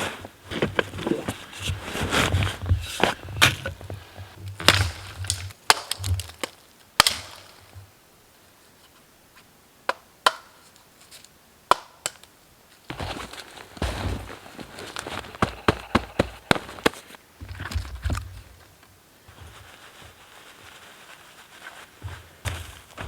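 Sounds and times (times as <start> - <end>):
scuffling movement: 0.0 - 6.3, 12.9 - 18.7, 19.3 - 23.0
wood being chopped: 3.0 - 7.6, 12.9 - 17.2.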